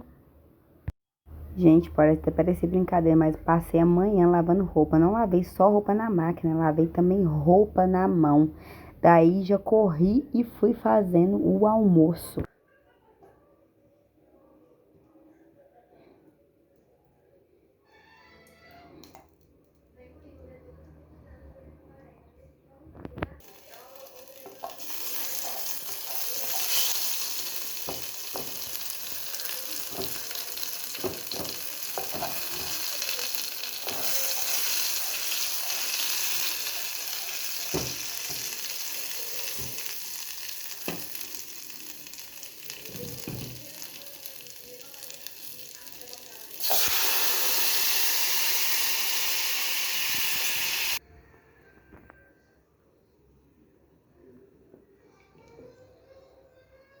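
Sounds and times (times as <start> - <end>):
food sizzling in a pan: 23.4 - 51.0
loud even sizzle: 23.4 - 51.0
utensil knocking while stirring: 30.9 - 32.8.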